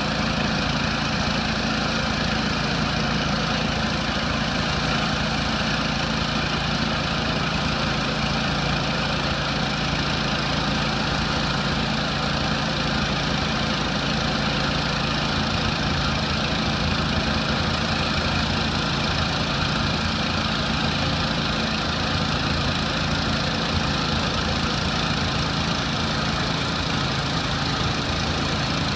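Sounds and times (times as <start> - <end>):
pressure washer engine running: 0.0 - 28.9.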